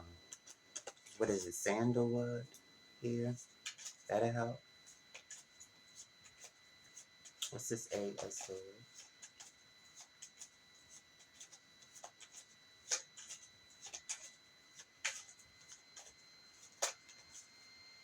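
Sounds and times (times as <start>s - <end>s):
cards rustling on a table: 0.3s - 1.6s, 3.1s - 17.5s.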